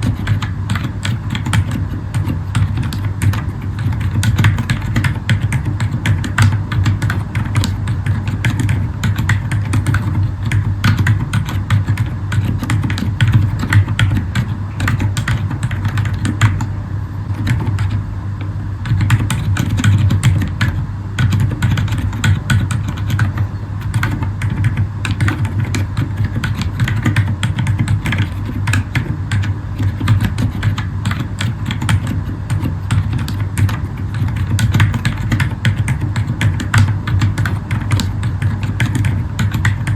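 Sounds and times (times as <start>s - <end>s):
typing on mechanical keyboard: 0.0s - 16.7s, 17.3s - 18.0s, 18.8s - 39.9s.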